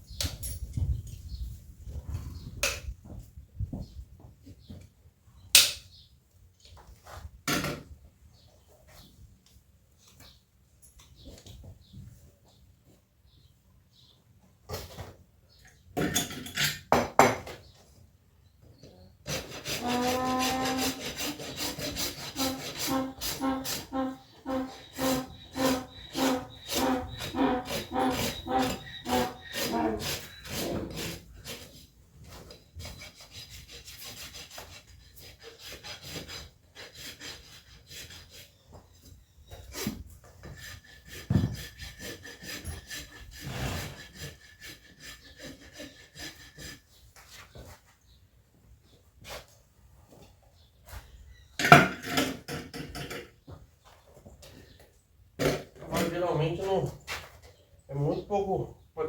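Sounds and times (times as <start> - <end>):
rasp filing a hoof: 19.2 - 47.9, 51.0 - 57.6.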